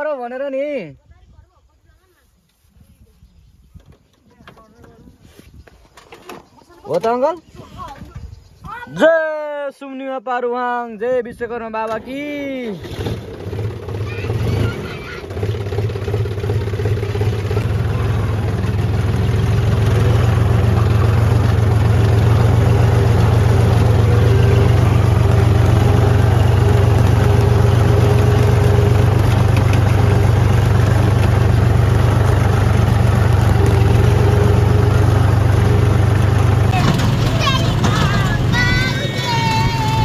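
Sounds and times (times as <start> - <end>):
tractor engine humming: 12.8 - 40.0.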